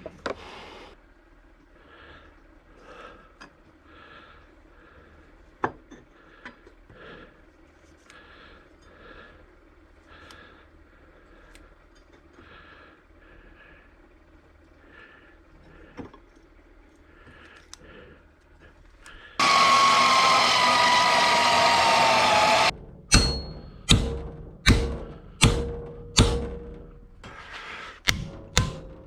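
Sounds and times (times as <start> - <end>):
power tool whining: 19.4 - 23.8
hammer blows on steel: 19.4 - 27.3, 28.0 - 29.0.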